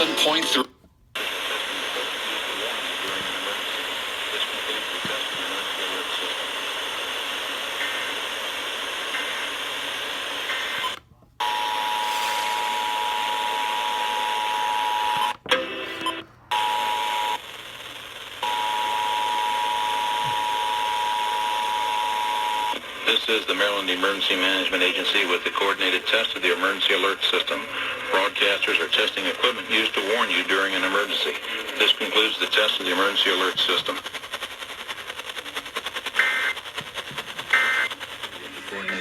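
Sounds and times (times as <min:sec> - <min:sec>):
radio static hiss: 0:00.0 - 0:39.0
short data bursts: 0:10.5 - 0:15.2, 0:34.2 - 0:39.0.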